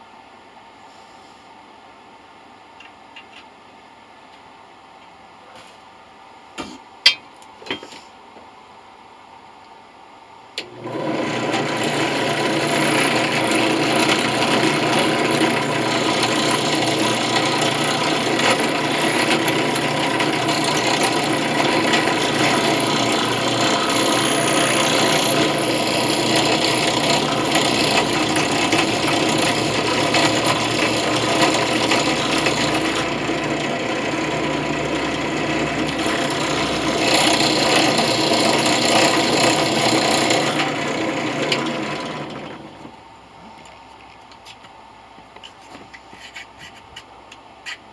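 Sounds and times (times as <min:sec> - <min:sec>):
power tool grinding: 0:10.6 - 0:42.8.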